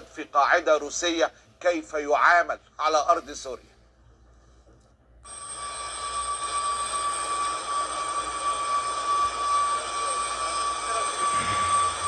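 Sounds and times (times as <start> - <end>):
jet engines whining: 6.3 - 12.0.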